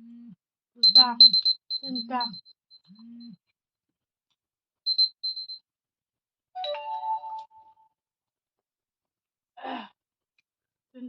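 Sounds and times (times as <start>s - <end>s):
high-pitched electronic beeps: 0.8s - 2.4s, 4.9s - 5.6s
chime of steady tones: 0.8s - 2.8s, 4.9s - 5.6s.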